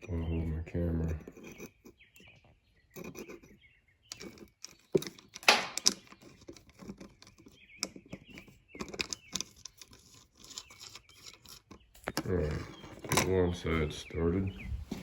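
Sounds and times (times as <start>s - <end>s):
hands working a metal handle: 4.1s - 13.8s.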